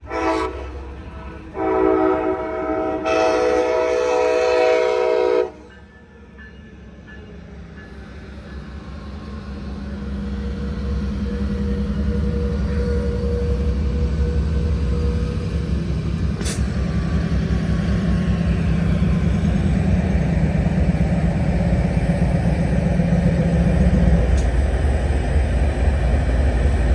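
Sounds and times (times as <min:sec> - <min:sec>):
locomotive horn blasts: 0:00.0 - 0:05.8
train rumble: 0:00.0 - 0:26.9.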